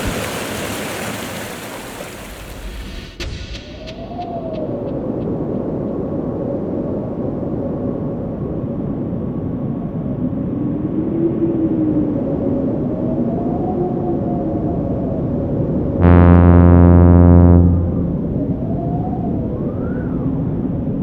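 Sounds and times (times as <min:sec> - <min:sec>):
soft synth tones: 0:16.0 - 0:18.7.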